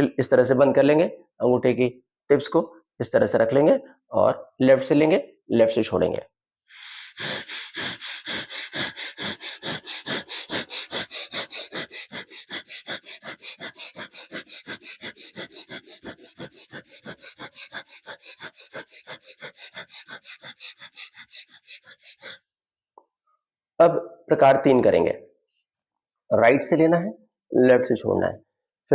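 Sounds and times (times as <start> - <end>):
rapid forceful nose breathing: 6.7 - 22.5.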